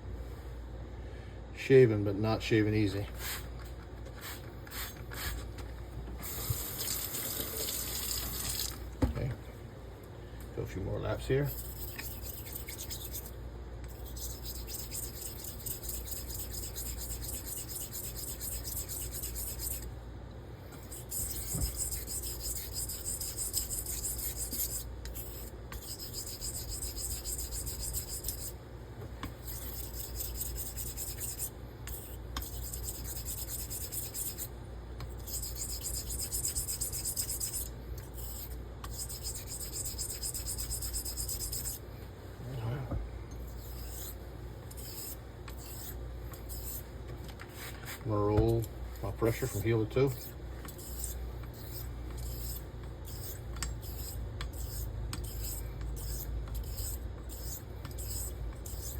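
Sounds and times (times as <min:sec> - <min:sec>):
razor scraping on honing stone: 0:11.4 - 0:19.9, 0:20.8 - 0:28.6, 0:29.4 - 0:41.8, 0:43.4 - 0:46.9, 0:48.4 - 0:58.9.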